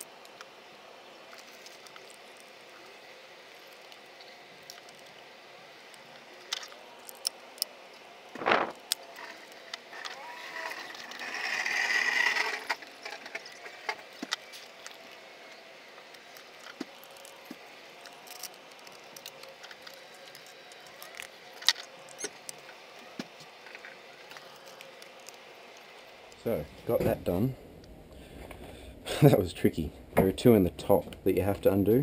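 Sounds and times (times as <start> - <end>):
scraping rustle: 8.4 - 15.2.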